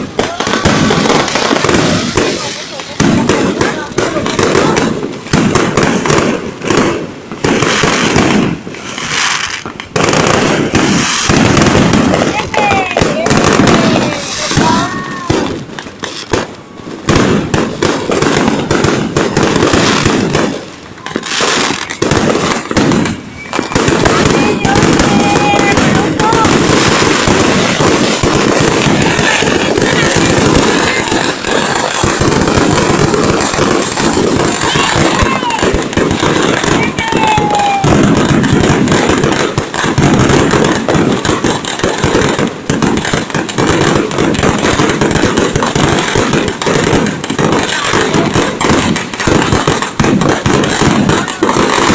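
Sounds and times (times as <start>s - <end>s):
fireworks bangs and crackles: 0.0s - 51.9s.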